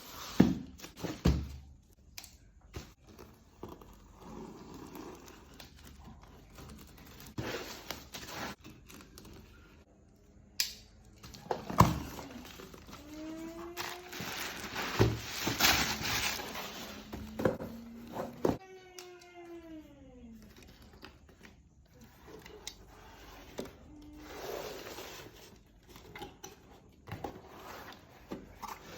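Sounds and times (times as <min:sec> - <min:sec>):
packaging rustling and crinkling: 0:11.8 - 0:17.4.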